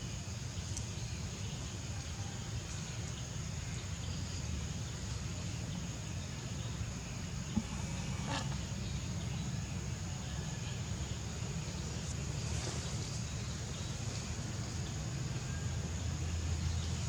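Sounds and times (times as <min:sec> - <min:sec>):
high insect buzzing: 0:07.5 - 0:08.8.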